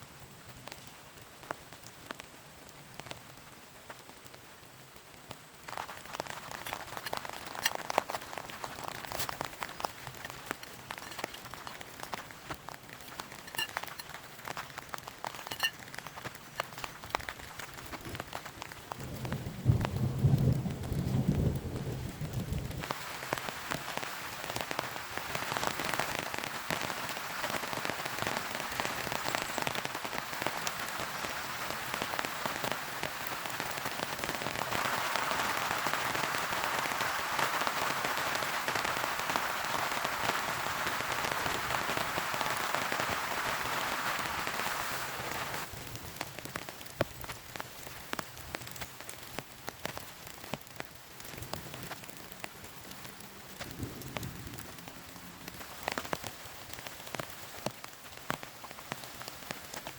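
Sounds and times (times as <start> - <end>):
heavy rain drumming on a tent: 0.0 - 59.9.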